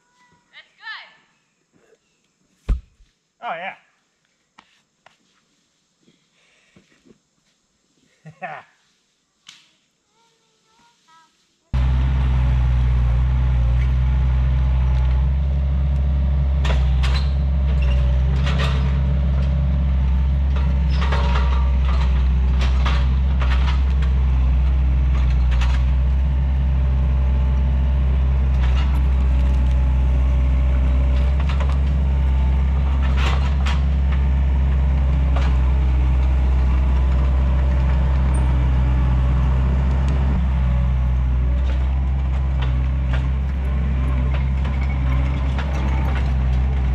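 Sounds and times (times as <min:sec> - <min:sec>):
diesel engine running under load: 0:11.8 - 0:46.9.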